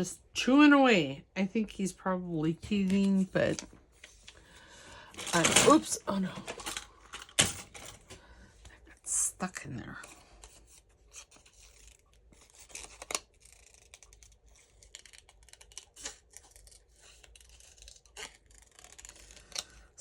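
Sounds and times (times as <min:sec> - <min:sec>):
scissors snipping paper: 0:11.1 - 0:19.9.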